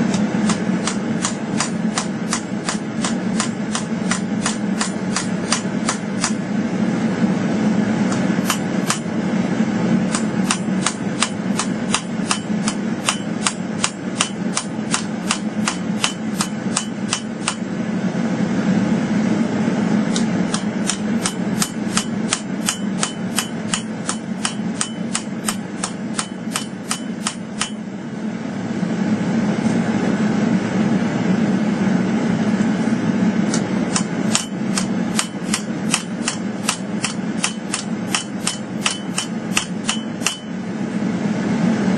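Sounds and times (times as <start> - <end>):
steady low hum: 0.0 - 41.9
hammer blows on steel: 20.1 - 27.9, 34.0 - 40.6.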